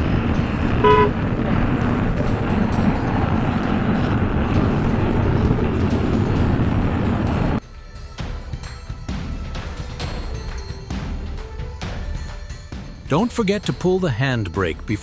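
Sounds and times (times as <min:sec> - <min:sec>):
vehicle and road rumble: 0:00.0 - 0:07.6
short pitched beep: 0:00.8 - 0:01.1.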